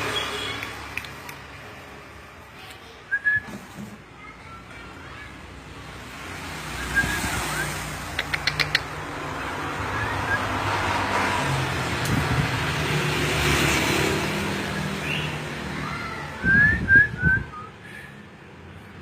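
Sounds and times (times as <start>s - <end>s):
passing vehicle road noise: 0.0s - 2.5s, 5.2s - 19.0s
bird whistled chirps: 3.1s - 3.6s, 6.8s - 7.8s.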